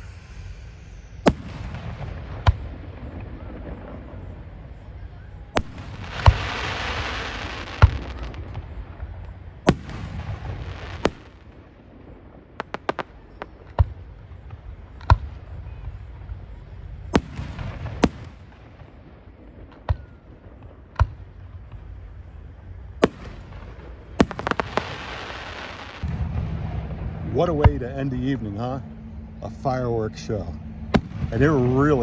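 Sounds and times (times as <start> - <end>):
firework crackling hiss: 0.0 - 22.2, 23.0 - 32.0
firework shells bursting: 5.6 - 16.3, 23.0 - 28.7
small firework pops: 12.6 - 16.0, 19.6 - 21.9, 23.0 - 26.2.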